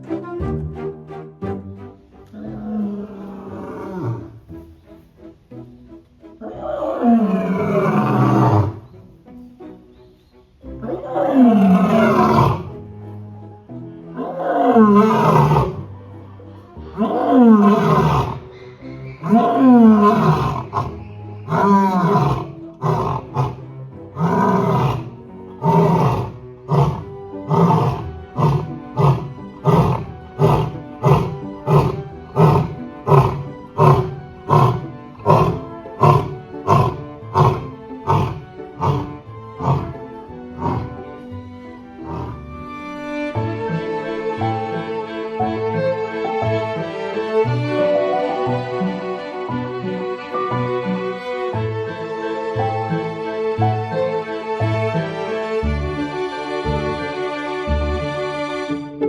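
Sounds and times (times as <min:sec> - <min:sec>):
lion roaring: 0:02.4 - 0:04.4, 0:06.4 - 0:08.8, 0:10.8 - 0:12.7, 0:14.2 - 0:15.9, 0:16.9 - 0:18.5, 0:19.2 - 0:23.6, 0:24.2 - 0:41.2, 0:42.0 - 0:42.5
lion grunting calls: 0:14.2 - 0:15.9, 0:16.9 - 0:23.6, 0:24.2 - 0:40.0, 0:40.6 - 0:41.0, 0:42.0 - 0:42.4.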